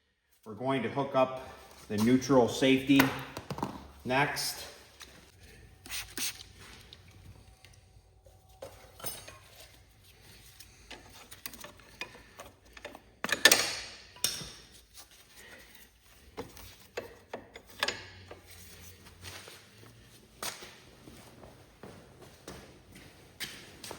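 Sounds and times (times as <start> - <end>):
metal tools clinking: 8.4 - 14.8.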